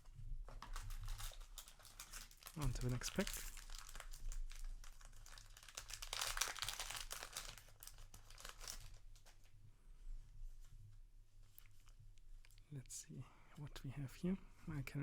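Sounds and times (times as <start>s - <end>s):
foil wrapper tearing and crinkling: 0.6s - 9.4s.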